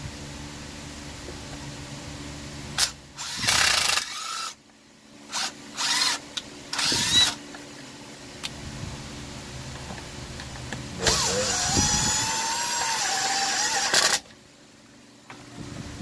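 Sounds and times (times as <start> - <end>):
steady low hum: 0.0 - 16.0
power drill bursts: 2.8 - 4.6, 5.3 - 7.4, 11.0 - 14.2.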